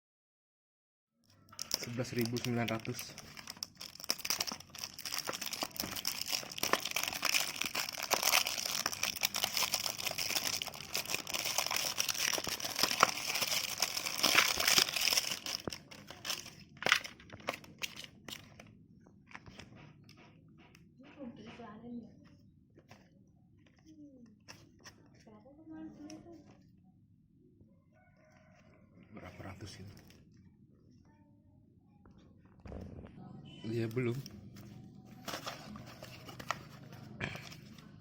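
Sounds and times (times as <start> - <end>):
plastic packaging crinkling: 1.5 - 18.6, 35.1 - 38.0.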